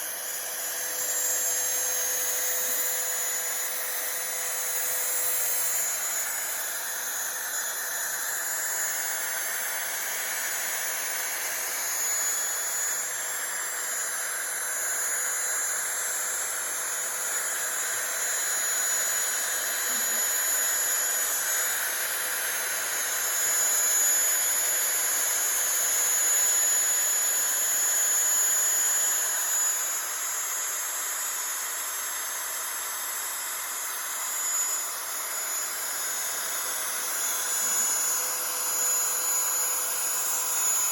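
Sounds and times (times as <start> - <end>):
router spindle high whine: 0.0 - 40.9.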